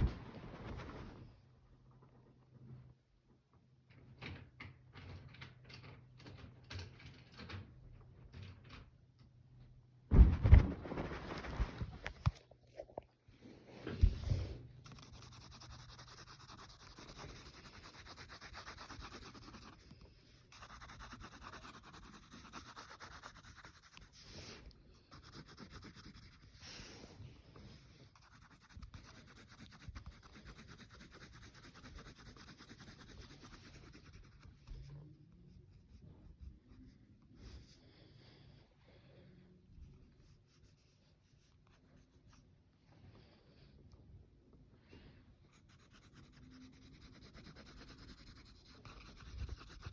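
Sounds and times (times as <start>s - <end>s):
coloring tool scratching on paper: 14.8s - 26.9s, 28.1s - 34.8s, 45.5s - 49.9s.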